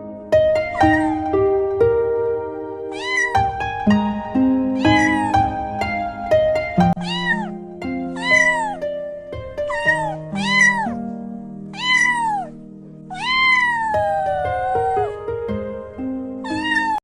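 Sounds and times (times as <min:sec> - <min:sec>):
background music with sustained notes: 0:00.0 - 0:17.0
kitten meowing: 0:00.6 - 0:01.4, 0:02.9 - 0:06.0, 0:06.7 - 0:08.9, 0:09.6 - 0:11.0, 0:11.7 - 0:15.2, 0:16.4 - 0:17.0.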